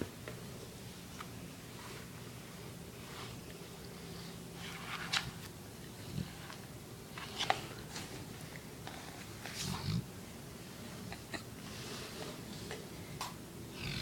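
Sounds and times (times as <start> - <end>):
dog snoring: 9.6 - 10.1, 13.7 - 14.0.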